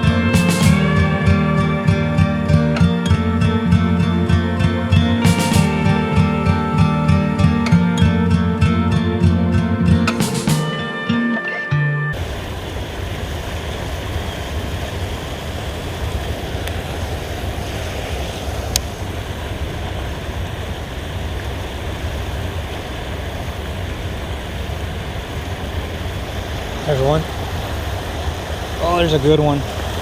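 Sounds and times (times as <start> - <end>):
river water pouring over weir: 12.2 - 30.0.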